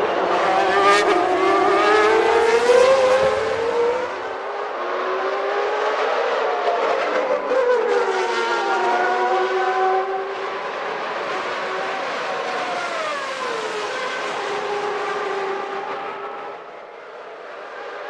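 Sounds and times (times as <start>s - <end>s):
racing car engines at high revs: 0.0s - 18.0s.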